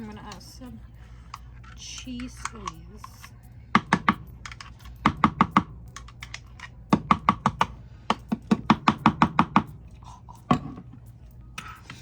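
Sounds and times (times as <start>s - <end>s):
knife chopping on cutting board: 7.0s - 9.8s.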